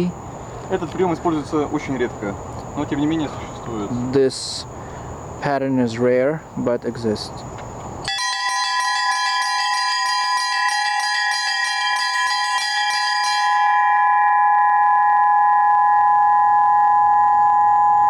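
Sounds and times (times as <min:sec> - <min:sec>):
church bells ringing: 0:08.1 - 0:16.1.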